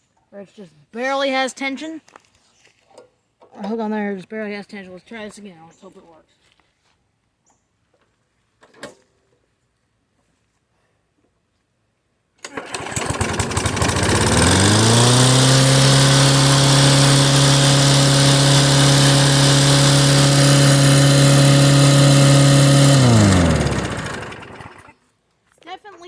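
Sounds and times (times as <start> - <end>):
lawn mower engine running: 12.4 - 24.9.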